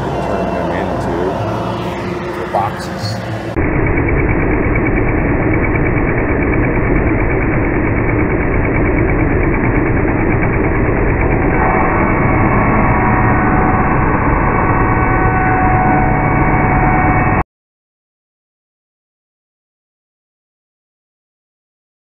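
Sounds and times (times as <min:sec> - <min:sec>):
table saw cutting plywood: 0:00.0 - 0:17.2.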